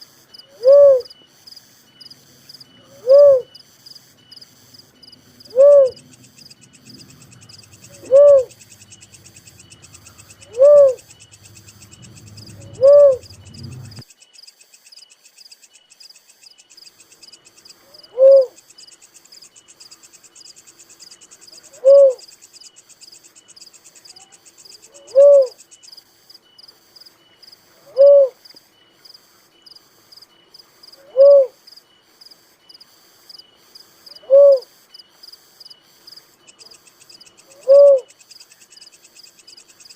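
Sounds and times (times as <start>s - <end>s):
faint insects chirring: 0.0s - 39.9s
dove hooting: 0.4s - 1.2s, 2.6s - 3.6s, 4.2s - 14.1s, 17.8s - 18.7s, 21.5s - 22.3s, 24.1s - 25.6s, 27.7s - 28.4s, 31.0s - 31.6s, 34.1s - 34.8s, 37.4s - 38.2s.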